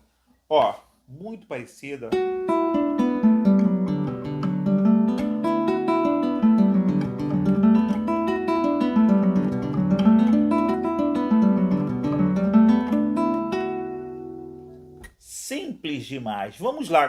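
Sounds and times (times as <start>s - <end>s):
acoustic guitar plucked notes: 2.1s - 15.2s.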